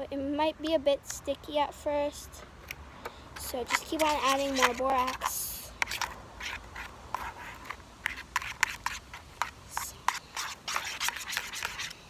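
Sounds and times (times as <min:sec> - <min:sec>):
knife scraping slime in a bowl: 0:03.4 - 0:12.0.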